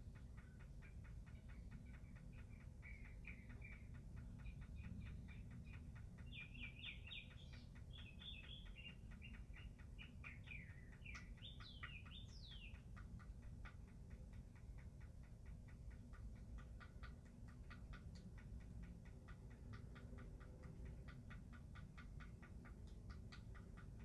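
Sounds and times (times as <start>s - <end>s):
low steady rumble: 0.0s - 24.0s
birds chirping: 0.4s - 13.0s.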